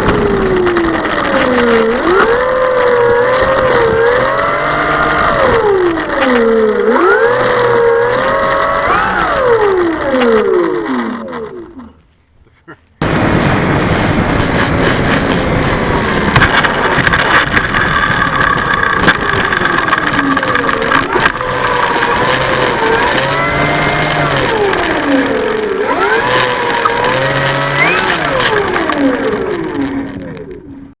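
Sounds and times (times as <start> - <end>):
motor whine rising and falling: 0.0 - 12.0, 13.0 - 31.0
wind buffeting microphone: 13.0 - 30.7.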